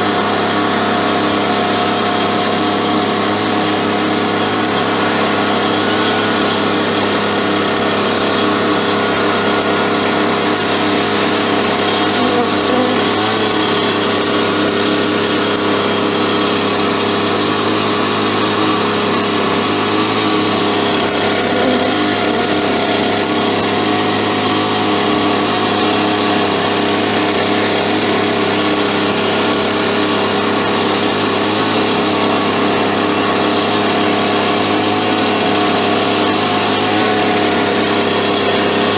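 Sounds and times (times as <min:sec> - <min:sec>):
motor running steadily: 0:00.0 - 0:38.9.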